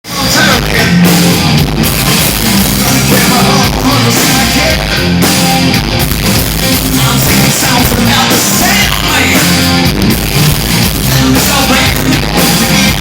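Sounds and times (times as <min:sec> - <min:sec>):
rock music with vocals: 0:00.0 - 0:13.0.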